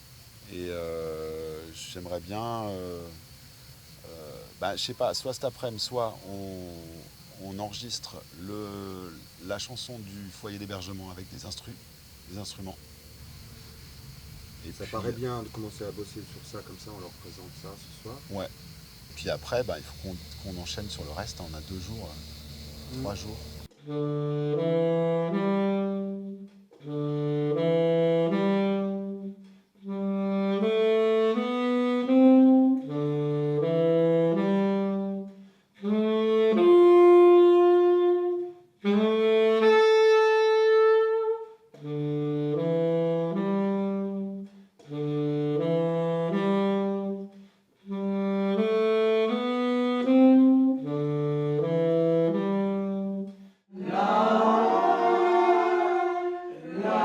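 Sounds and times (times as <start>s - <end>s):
saxophone playing: 8.4s - 57.0s.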